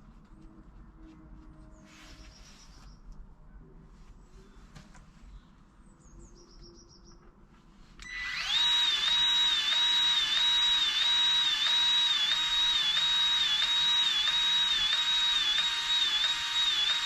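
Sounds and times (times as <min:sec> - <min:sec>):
grease gun motor whine: 0:08.0 - 0:17.0.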